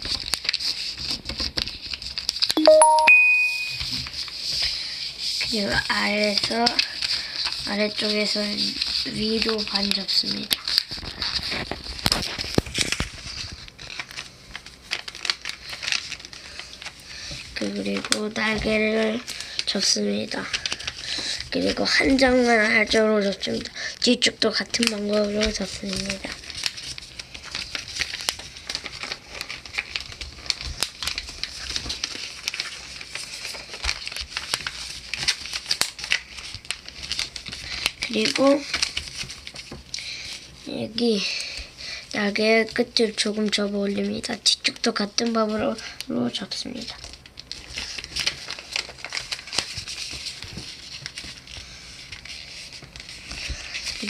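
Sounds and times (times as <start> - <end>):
paper folding and crinkling: 0.0 - 2.8, 3.8 - 54.0.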